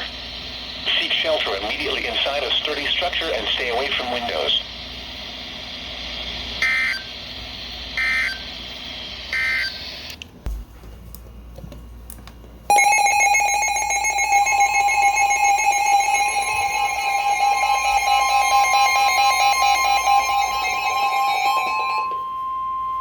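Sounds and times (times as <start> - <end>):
radio background hiss: 0.0 - 7.7
data tone bursts: 12.7 - 23.0
higher electronic tone: 12.7 - 23.0
steady electronic alert tone: 12.7 - 23.0.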